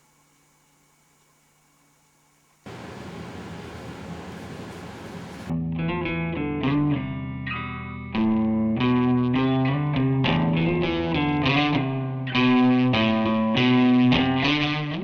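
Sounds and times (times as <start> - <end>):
distorted electric guitar: 5.5 - 15.0.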